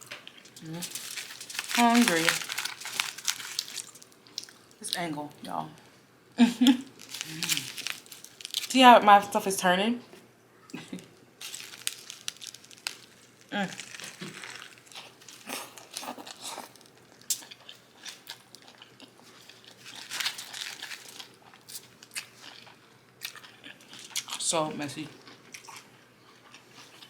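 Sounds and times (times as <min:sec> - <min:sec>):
wrapping crinkling: 0:00.2 - 0:04.9, 0:06.7 - 0:08.9, 0:11.4 - 0:22.4
burger being bitten and chewed: 0:00.4 - 0:04.8, 0:07.0 - 0:08.7, 0:11.4 - 0:24.4.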